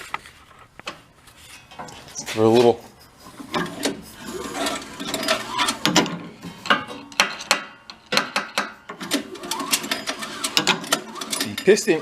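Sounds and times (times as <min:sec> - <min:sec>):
sharp metallic knocks: 0:05.8 - 0:09.0.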